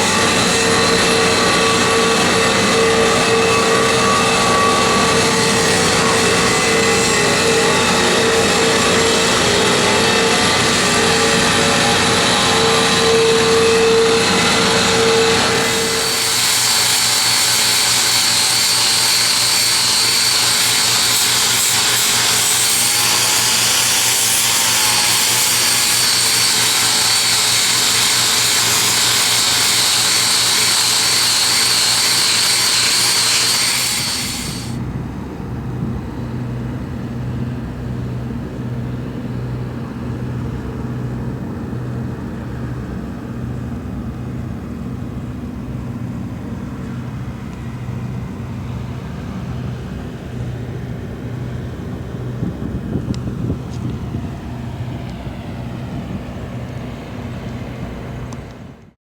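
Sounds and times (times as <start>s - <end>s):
angle grinder grinding steel: 0.0s - 34.8s.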